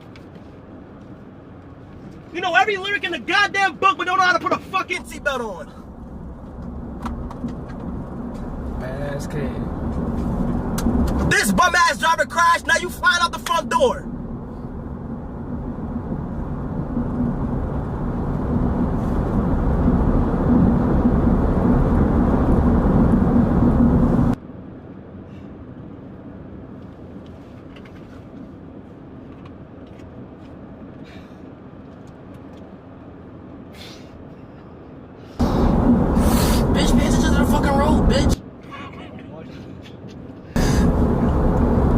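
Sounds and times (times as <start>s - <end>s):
car road and engine noise: 0.0s - 41.9s
steady hum: 2.5s - 24.4s, 33.7s - 38.4s.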